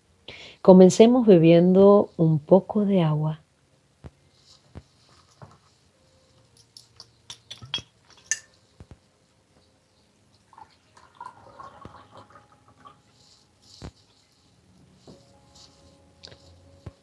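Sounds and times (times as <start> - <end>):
glass clicking and knocking: 6.6 - 8.5.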